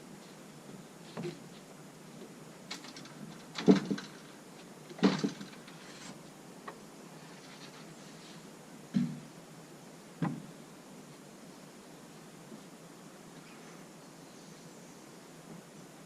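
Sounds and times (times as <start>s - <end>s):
knocks and clattering thumps: 2.7s - 4.2s, 4.9s - 5.7s.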